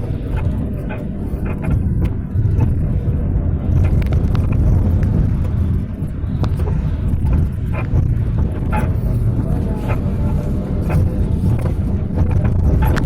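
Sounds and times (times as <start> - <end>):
vehicle body rattling: 0.0 - 13.0
vehicle engine and tyre rumble: 0.0 - 13.0.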